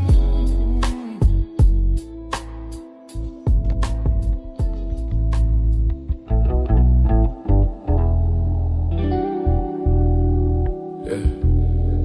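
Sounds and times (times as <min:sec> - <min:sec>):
deep bass line: 0:00.0 - 0:12.0
plucked guitar: 0:03.1 - 0:12.0.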